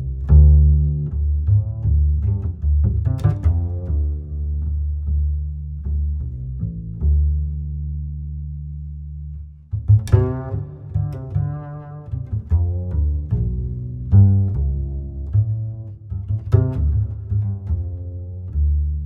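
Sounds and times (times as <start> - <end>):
deep sustained bass notes: 0.0 - 19.0.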